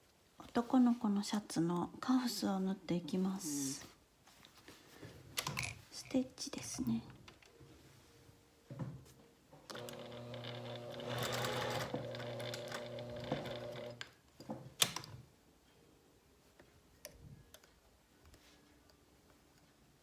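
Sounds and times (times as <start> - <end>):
sewing machine running: 9.7 - 14.0.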